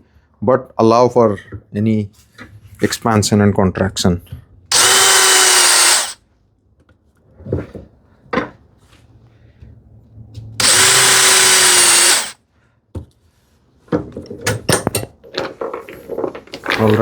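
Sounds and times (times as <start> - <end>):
power drill boring into wood: 4.7 - 6.2, 10.6 - 12.4.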